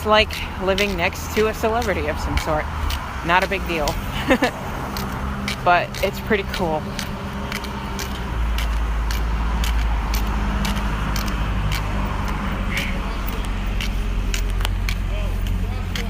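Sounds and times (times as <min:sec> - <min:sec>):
road traffic rumble: 0:00.0 - 0:16.0
cane tip tapping on pavement: 0:00.7 - 0:04.0, 0:04.8 - 0:12.4, 0:13.3 - 0:16.0.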